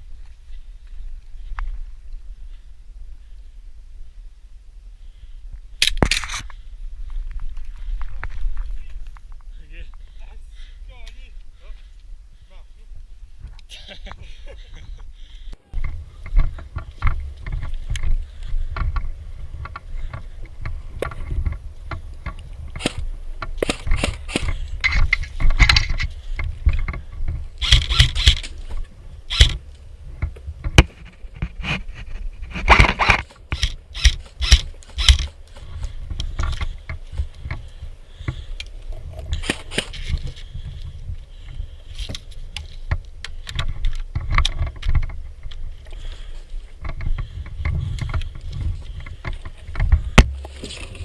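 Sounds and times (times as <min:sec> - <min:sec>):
rustling and scraping: 0:05.9 - 0:10.2, 0:13.4 - 0:51.0
sharp clicks and knocks: 0:15.8 - 0:28.6, 0:30.2 - 0:35.4.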